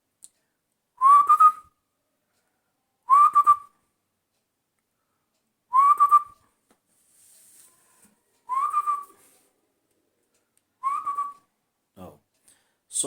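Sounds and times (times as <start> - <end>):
person whistling bird call: 1.0 - 1.7, 3.1 - 3.7, 5.7 - 6.4, 8.5 - 9.2, 10.8 - 11.4.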